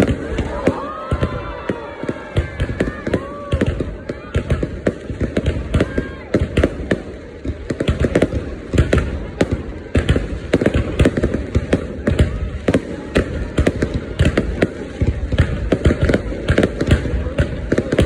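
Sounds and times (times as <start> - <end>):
fireworks exploding: 0.0 - 18.0.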